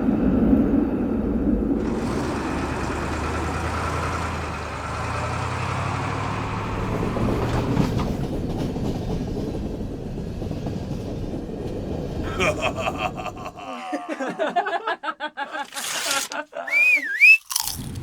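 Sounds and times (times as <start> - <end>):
large vehicle engine droning: 0.0 - 8.8.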